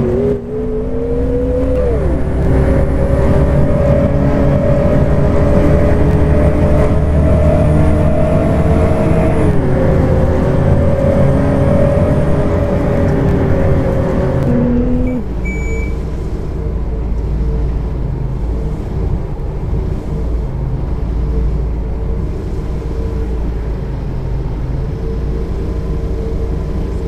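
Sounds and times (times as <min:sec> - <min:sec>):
bus engine idling: 0:01.9 - 0:27.0
short high beep: 0:15.0 - 0:16.0.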